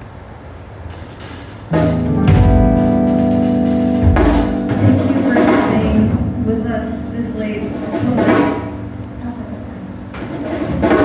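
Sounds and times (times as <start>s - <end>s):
loud guitar chords: 1.7s - 11.0s
low buzz: 1.7s - 11.0s
kick drum: 2.3s - 2.9s.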